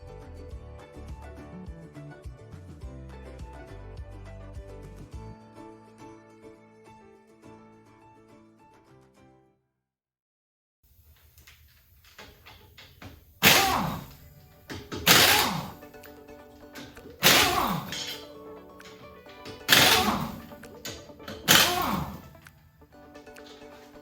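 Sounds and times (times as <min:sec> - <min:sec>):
background music: 0:00.0 - 0:09.4, 0:13.5 - 0:24.0
impact wrench bursts: 0:11.1 - 0:16.0, 0:16.7 - 0:22.7.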